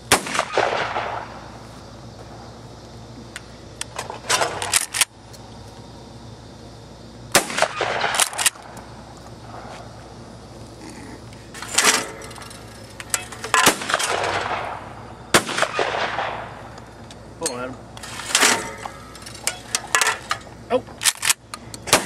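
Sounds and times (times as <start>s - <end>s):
shotgun shots: 0.1s - 1.4s, 7.3s - 8.7s, 13.5s - 16.6s.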